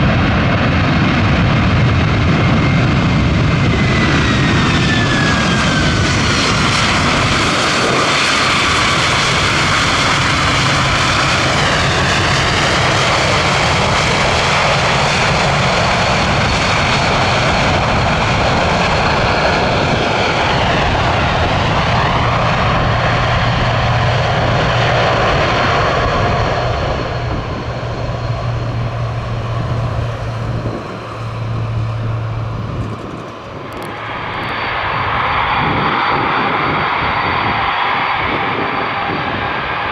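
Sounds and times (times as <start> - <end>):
jet engines running loud: 0.0 - 39.9
high whine falling in pitch: 21.2 - 35.3.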